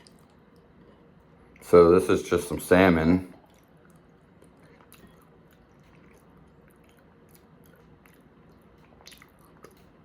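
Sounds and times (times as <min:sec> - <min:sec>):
close-up chewing: 0:03.3 - 0:10.0.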